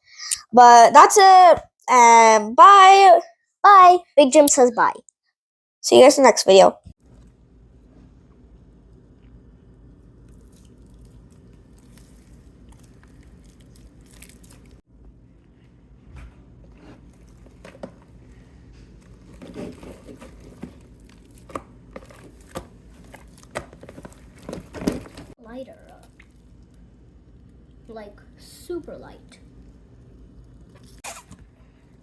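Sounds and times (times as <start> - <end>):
low steady hum: 7.0 - 32.0
crinkling and rustling handling noises: 10.3 - 14.8, 15.5 - 26.8.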